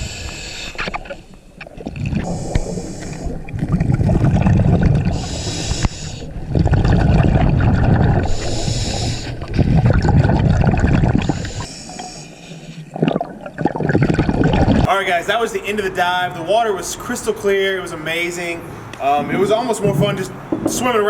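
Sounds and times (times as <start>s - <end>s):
regulator hissing inhale: 0.0s - 0.9s, 2.2s - 3.4s, 5.1s - 6.4s, 8.3s - 9.5s, 11.2s - 13.0s
diver bubbling exhale: 0.0s - 14.9s.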